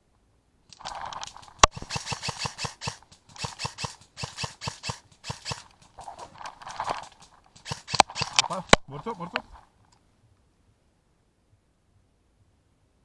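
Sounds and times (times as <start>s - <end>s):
airsoft gun full-auto bursts: 0.8s - 8.8s.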